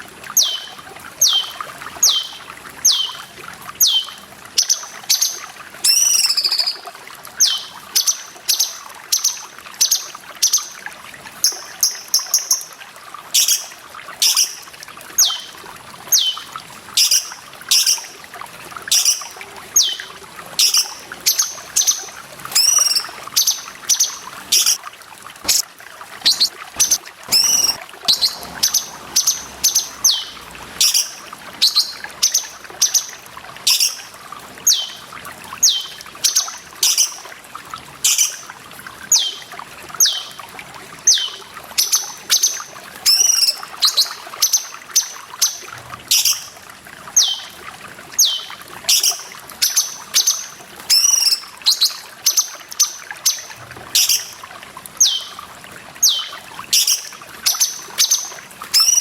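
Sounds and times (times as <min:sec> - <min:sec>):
trickling water: 0:00.0 - 0:59.0
bird calling in sharp sliding notes: 0:26.2 - 0:32.4.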